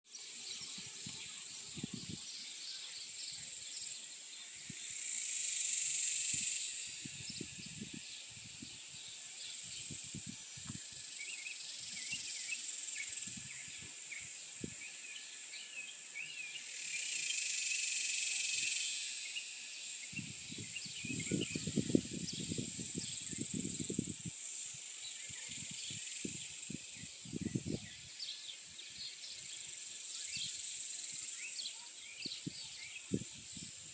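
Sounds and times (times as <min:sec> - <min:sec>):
insects droning: 0:00.1 - 0:33.9
birds chirping: 0:18.9 - 0:23.8.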